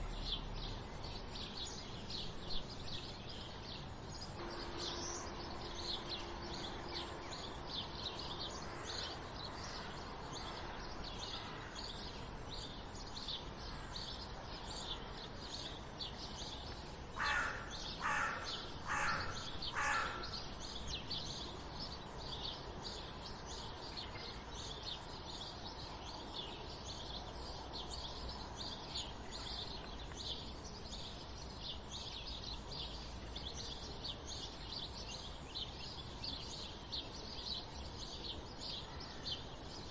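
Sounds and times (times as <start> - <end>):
sparrows chirping: 0.0 - 39.9
lower bird call: 4.4 - 8.0.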